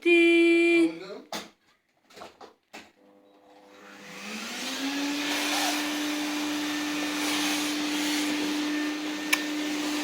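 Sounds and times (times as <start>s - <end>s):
vacuum cleaner running: 3.0s - 10.0s.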